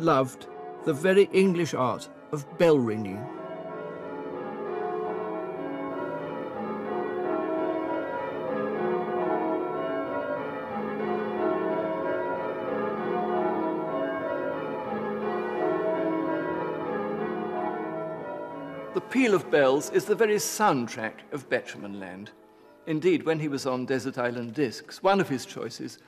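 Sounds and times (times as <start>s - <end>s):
church bells change ringing: 0.0s - 26.0s.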